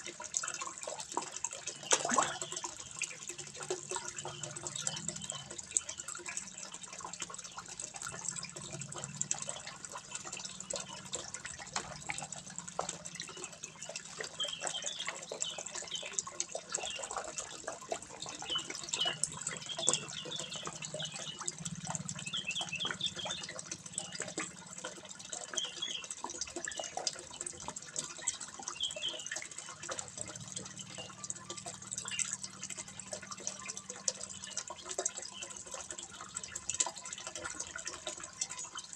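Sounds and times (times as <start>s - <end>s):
water trickling into pond: 0.0s - 38.9s.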